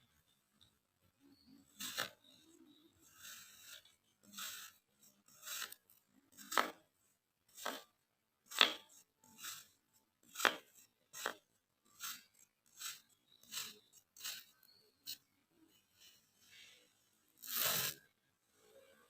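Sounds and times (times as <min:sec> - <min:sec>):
kinetic sand being worked: 0:01.7 - 0:06.8, 0:07.5 - 0:07.9, 0:08.5 - 0:15.2, 0:17.4 - 0:18.0.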